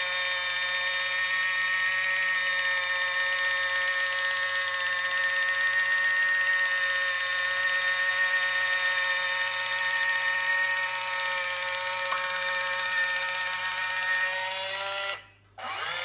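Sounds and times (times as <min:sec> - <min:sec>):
electric can opener whine: 0:00.0 - 0:16.0.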